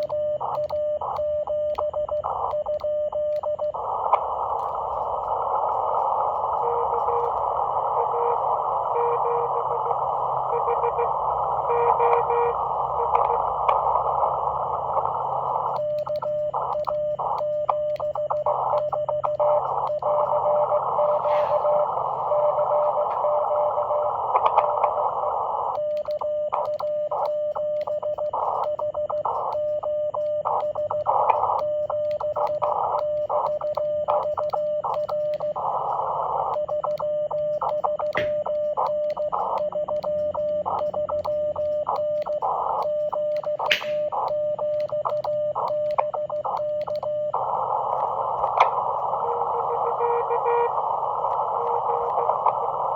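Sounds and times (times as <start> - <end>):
radio hiss: 3.2 - 52.9
morse code tone: 4.6 - 13.7, 25.7 - 52.9.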